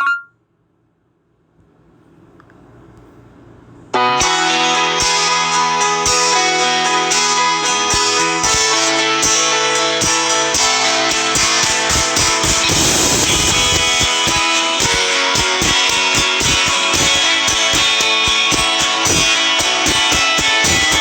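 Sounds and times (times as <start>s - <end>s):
ringtone music with strummed guitar: 0.0s - 0.4s, 4.0s - 21.0s
steady beat: 4.2s - 21.0s.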